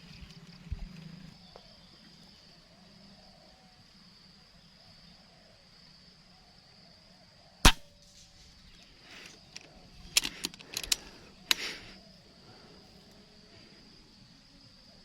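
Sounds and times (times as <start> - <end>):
insect drone: 0.0 - 15.0
rifle clicks: 7.7 - 7.9, 9.6 - 11.7
air rifle shot: 7.7 - 8.0.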